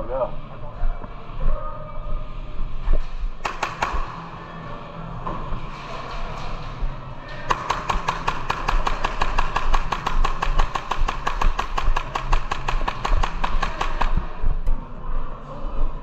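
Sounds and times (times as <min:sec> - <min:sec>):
airsoft gun firing: 0:03.4 - 0:04.3, 0:07.5 - 0:14.6.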